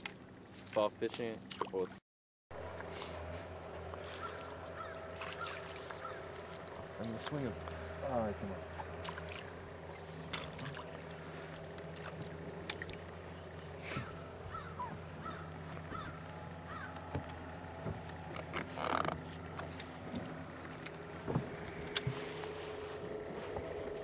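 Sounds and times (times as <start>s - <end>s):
boat motor humming: 2.5s - 24.0s
harsh bird call: 13.8s - 17.0s.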